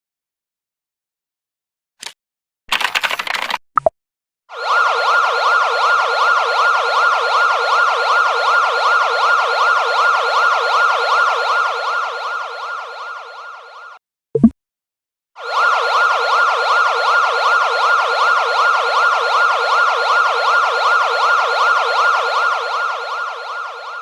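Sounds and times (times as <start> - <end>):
siren-like alert tone warbling: 8.6 - 14.5.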